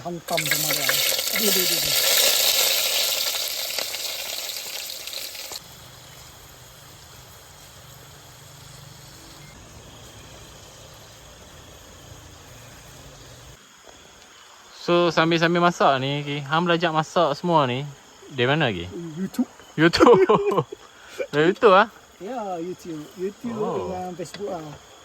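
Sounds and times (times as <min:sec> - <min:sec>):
food sizzling in a pan: 0:00.0 - 0:13.8.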